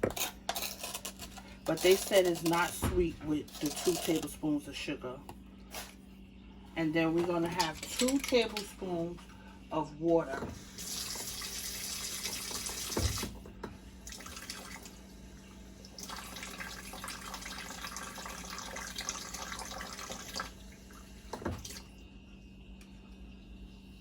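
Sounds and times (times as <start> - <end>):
kitchen tap running: 10.2 - 22.0.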